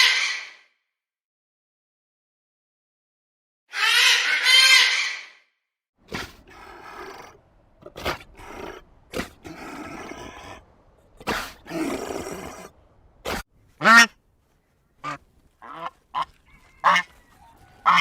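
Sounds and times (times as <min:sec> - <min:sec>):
rough grunting calls: 0:06.0 - 0:14.2, 0:15.0 - 0:18.0
drawn-out animal call: 0:15.0 - 0:18.0.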